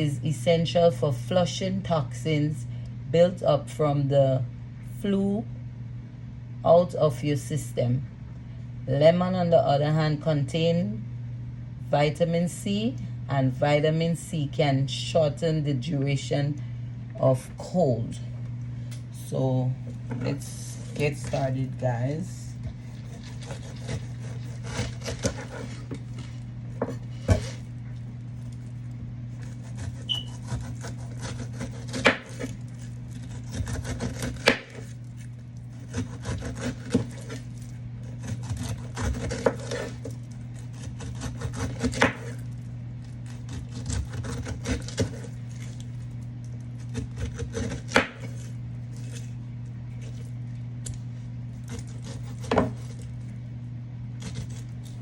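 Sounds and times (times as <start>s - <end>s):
steady low hum: 0.0s - 55.0s
knife scraping on cutting board: 22.6s - 27.7s, 29.3s - 42.5s, 46.8s - 49.4s, 51.6s - 53.1s.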